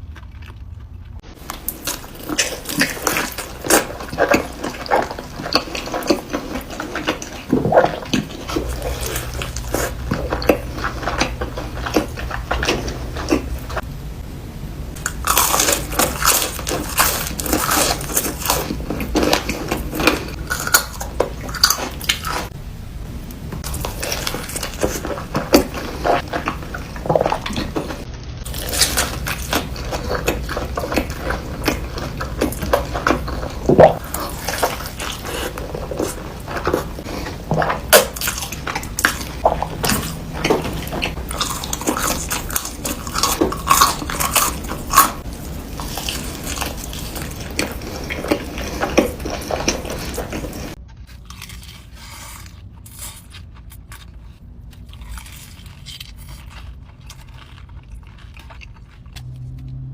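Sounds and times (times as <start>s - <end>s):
crunching and chewing: 0.0s - 13.9s, 14.9s - 22.6s, 23.3s - 59.9s
wet mouth sounds: 0.0s - 13.9s, 23.6s - 50.8s.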